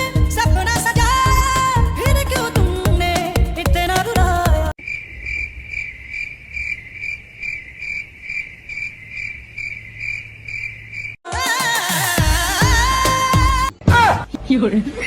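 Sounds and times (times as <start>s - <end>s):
song playing: 0.0s - 4.8s, 11.3s - 13.7s
cricket chirping: 4.8s - 11.2s.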